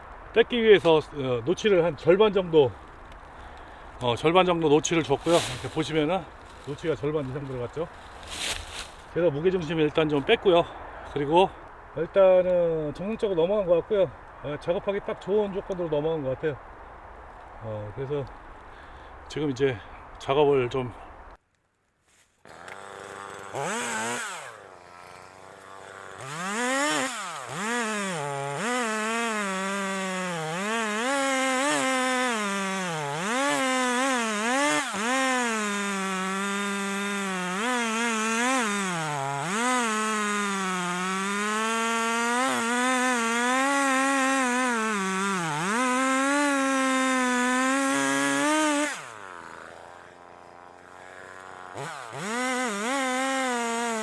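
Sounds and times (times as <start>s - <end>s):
chainsaw cutting wood: 2.6s - 9.2s, 22.4s - 54.0s.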